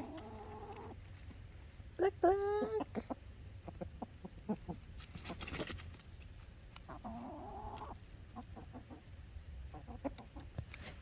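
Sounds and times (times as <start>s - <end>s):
chickens clucking: 0.0s - 1.4s, 2.0s - 5.6s, 6.8s - 10.5s.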